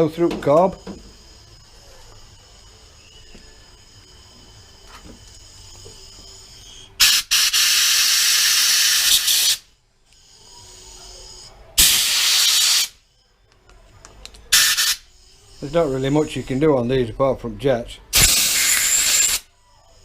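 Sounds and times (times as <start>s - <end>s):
compressed air blasts hissing: 7.0s - 9.7s, 11.8s - 13.0s, 14.5s - 16.7s, 18.1s - 19.5s.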